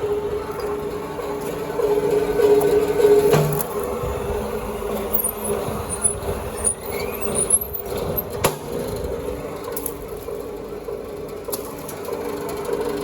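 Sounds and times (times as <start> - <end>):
wire stripping machine humming: 0.0 - 13.0.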